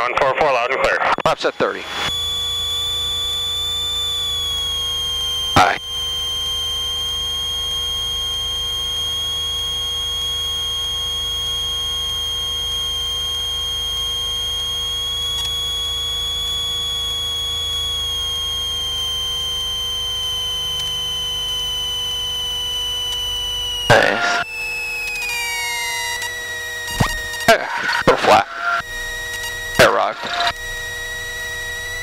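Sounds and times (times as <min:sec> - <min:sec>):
aircraft engine drone: 0:00.0 - 0:32.0
steady high-pitched warning tone: 0:00.0 - 0:32.0.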